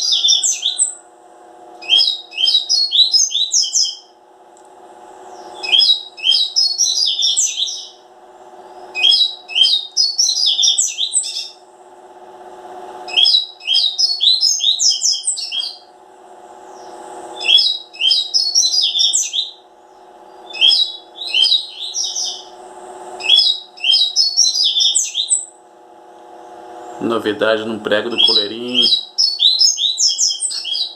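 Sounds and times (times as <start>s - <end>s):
bird twittering song: 0.0s - 1.0s, 1.8s - 4.1s, 5.2s - 8.0s, 8.6s - 11.6s, 13.1s - 15.9s, 16.7s - 22.6s, 23.2s - 25.6s, 26.8s - 30.9s
steady low hum: 0.0s - 30.9s.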